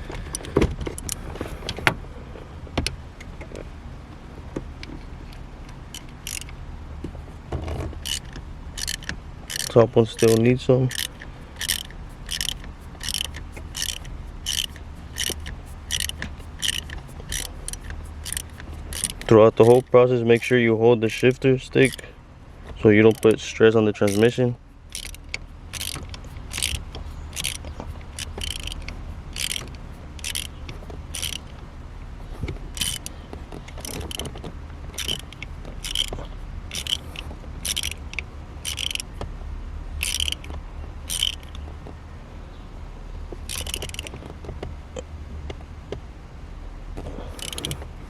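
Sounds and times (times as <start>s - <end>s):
ratchet wrench clicking: 5.9s - 6.6s, 7.6s - 22.1s, 23.0s - 23.4s, 24.0s - 31.6s, 32.7s - 39.1s, 40.0s - 41.6s, 43.5s - 44.1s, 47.4s - 47.9s.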